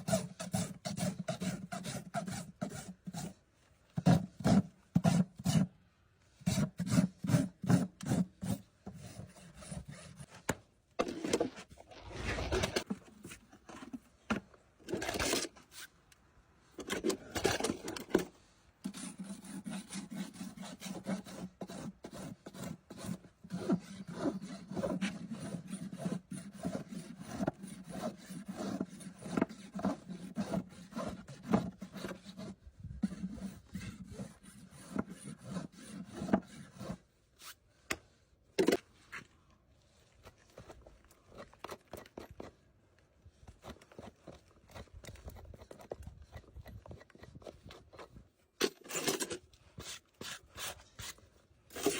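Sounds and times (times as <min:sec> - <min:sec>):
rasp filing hoof: 0:00.0 - 0:03.4, 0:06.4 - 0:10.4, 0:16.8 - 0:37.6, 0:43.5 - 0:51.9.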